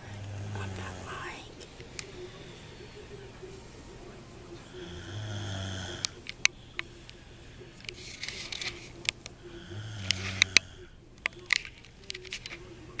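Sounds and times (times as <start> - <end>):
low snore: 4.8 - 6.2, 9.4 - 11.0.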